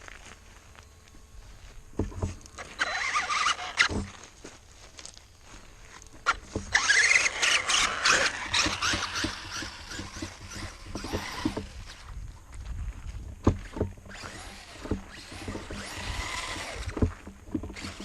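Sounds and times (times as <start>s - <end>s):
electric motor whining: 1.9s - 4.2s, 6.2s - 12.2s, 13.4s - 18.0s
tires spinning in mud: 6.7s - 12.0s, 13.6s - 18.0s.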